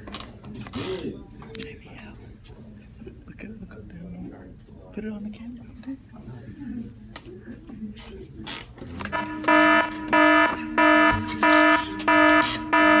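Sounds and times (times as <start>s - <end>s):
fire alarm horn blasts: 9.1s - 13.0s.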